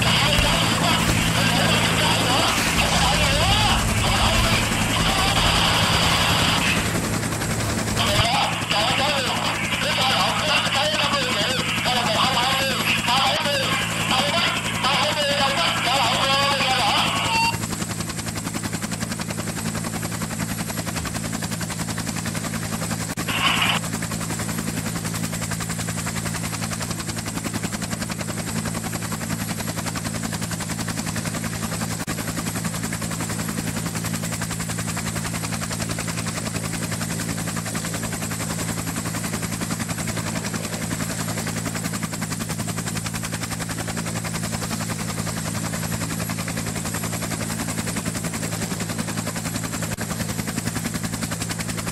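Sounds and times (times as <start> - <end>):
helicopter rotor drone: 0.0 - 51.9.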